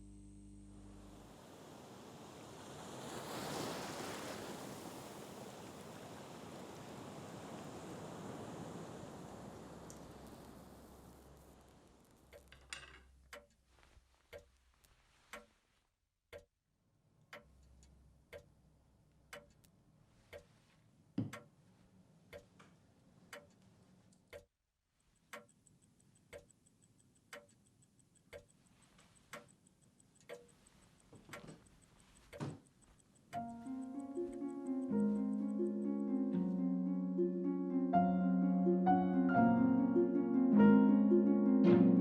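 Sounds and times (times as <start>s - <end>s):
clock ticking: 13.2s - 13.7s, 14.3s - 15.6s, 17.3s - 18.5s, 19.2s - 19.7s, 20.3s - 20.5s, 22.3s - 22.7s, 23.3s - 36.3s
fast high-pitched watch ticking: 25.1s - 35.9s.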